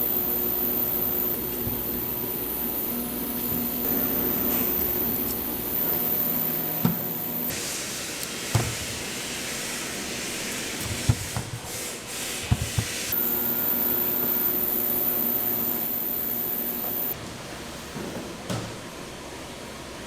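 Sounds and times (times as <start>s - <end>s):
machine high whine: 0.0s - 7.5s, 13.1s - 17.2s
machinery humming: 0.0s - 7.6s, 13.1s - 17.2s.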